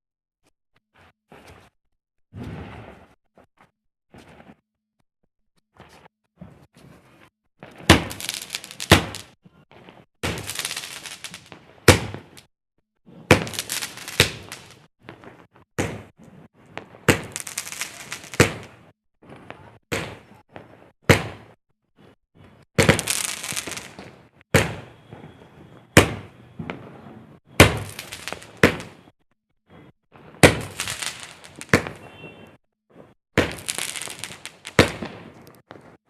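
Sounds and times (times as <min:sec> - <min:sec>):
firework bangs: 0:02.3 - 0:03.2, 0:07.6 - 0:12.5, 0:13.1 - 0:36.0
firework crackling: 0:07.6 - 0:12.5, 0:13.2 - 0:20.4, 0:22.7 - 0:29.1, 0:30.2 - 0:32.2, 0:33.0 - 0:36.0.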